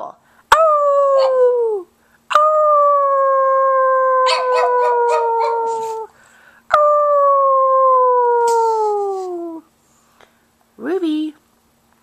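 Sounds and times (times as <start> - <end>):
dog howling: 0.5 - 1.8, 2.4 - 6.1.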